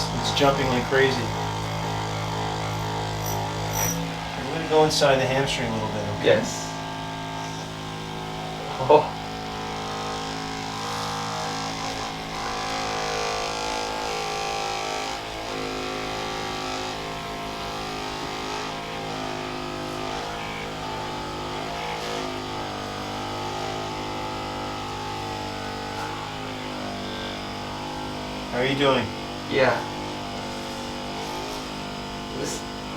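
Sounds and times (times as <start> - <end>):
massage gun motor hum: 0.0 - 32.9.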